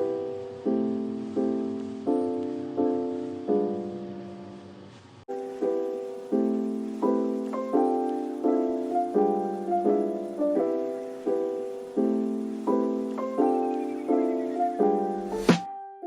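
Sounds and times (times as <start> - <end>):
piano chords: 0.0 - 16.0.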